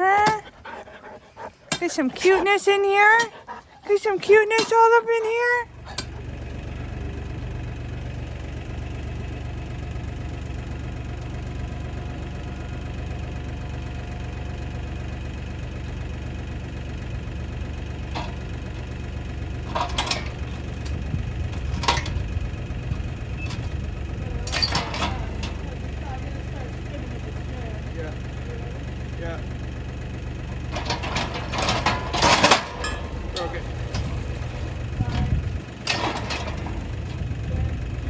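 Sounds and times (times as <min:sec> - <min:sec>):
tractor diesel engine running: 0:00.0 - 0:38.0
sharp knocks or clanks: 0:18.0 - 0:25.8, 0:30.7 - 0:37.3.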